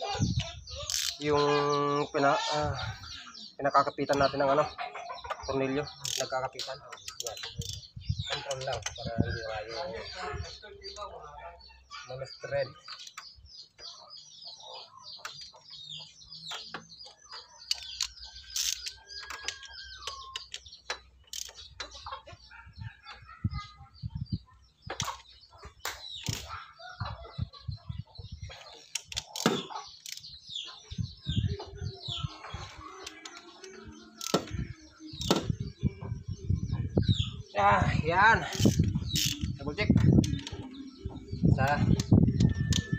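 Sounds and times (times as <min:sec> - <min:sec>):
birds chirping: 0:00.0 - 0:42.9
hand tool clicks and knocks: 0:16.5 - 0:22.0.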